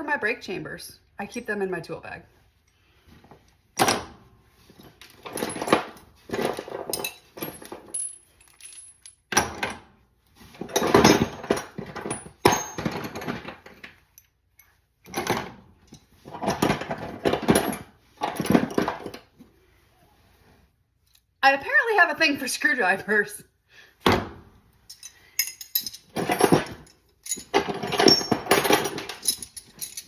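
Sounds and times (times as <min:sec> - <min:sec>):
metal hand tools clinking: 0:24.8 - 0:30.0.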